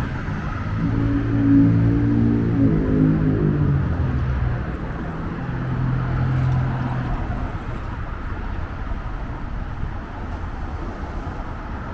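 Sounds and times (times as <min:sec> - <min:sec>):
traffic rumble: 0:00.0 - 0:11.9
vehicle engine hum: 0:00.0 - 0:11.9.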